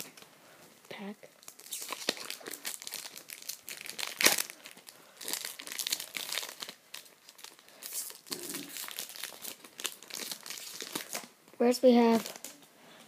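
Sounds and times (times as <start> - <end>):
foil wrapper crinkling: 1.4 - 11.3, 12.0 - 12.6
foil wrapper ripping: 1.4 - 11.3.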